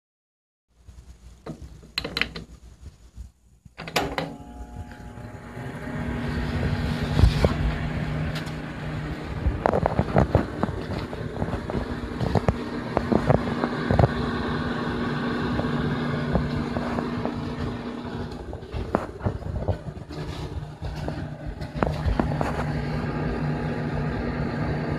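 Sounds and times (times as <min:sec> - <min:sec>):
microwave oven humming: 0:03.8 - 0:24.9.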